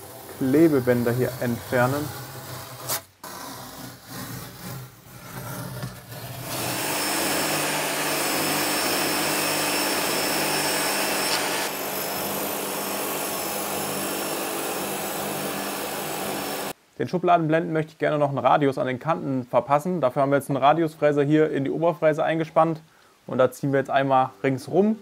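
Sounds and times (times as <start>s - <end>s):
workshop machine whining: 0.0s - 3.5s, 6.2s - 16.7s
masking tape peeling: 1.8s - 8.0s.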